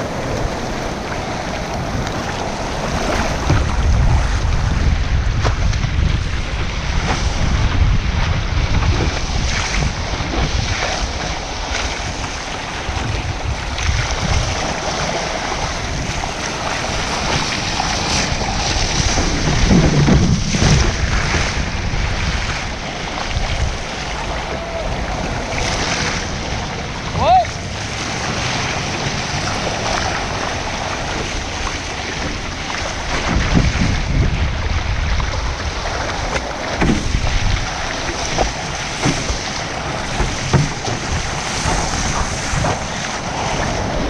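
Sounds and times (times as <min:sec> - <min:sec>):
ocean surf: 0:00.0 - 0:44.0
water splashing around kayak: 0:00.0 - 0:44.0
wind buffeting microphone: 0:00.0 - 0:44.0.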